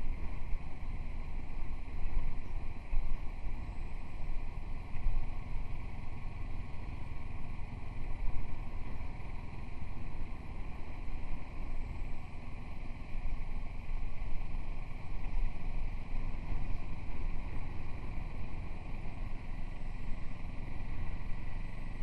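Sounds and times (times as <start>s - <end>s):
motorcycle engine and road rumble: 0.0s - 22.0s.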